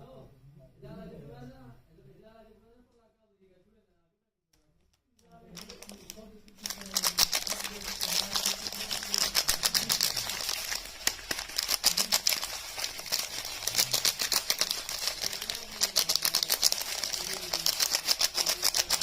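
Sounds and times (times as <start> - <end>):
packaging crackling in hands: 5.3 - 19.0.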